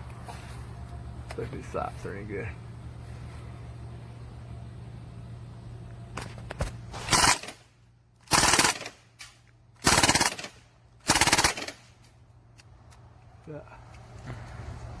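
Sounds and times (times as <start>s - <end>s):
air rifle firing bursts: 7.0s - 7.7s, 8.3s - 9.1s, 9.8s - 11.9s.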